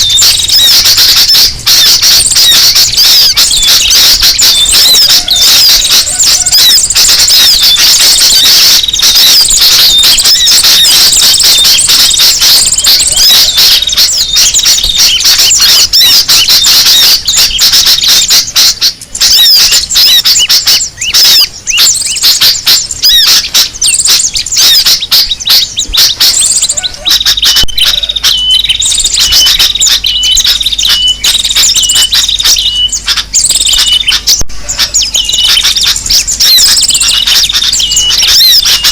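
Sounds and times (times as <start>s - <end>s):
small birds chattering and chirping: 0.0s - 38.9s.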